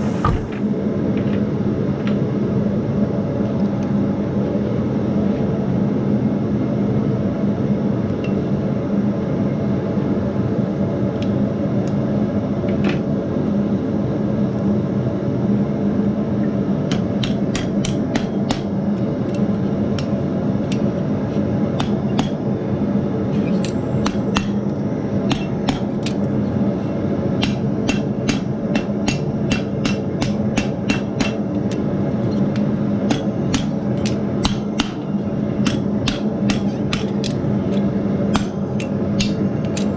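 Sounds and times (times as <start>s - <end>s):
low drone: 0.0s - 12.6s
hammer striking steel on anvil: 16.9s - 18.8s, 21.8s - 22.4s, 23.6s - 24.7s, 25.3s - 26.2s, 27.4s - 37.4s, 38.3s - 39.9s.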